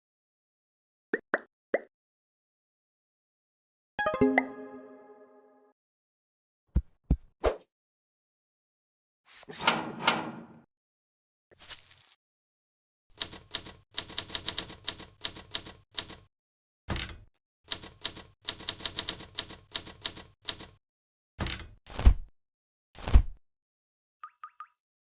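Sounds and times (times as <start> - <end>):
typewriter typing: 13.2 - 16.3, 17.7 - 20.8.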